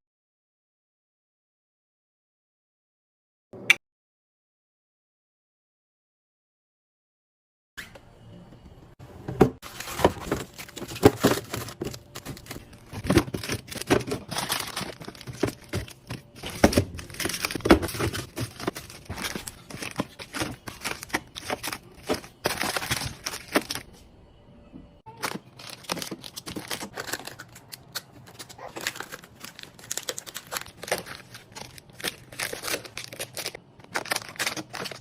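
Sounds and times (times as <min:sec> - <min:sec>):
plastic packaging crinkling: 0:09.6 - 0:23.9, 0:25.1 - 0:35.0.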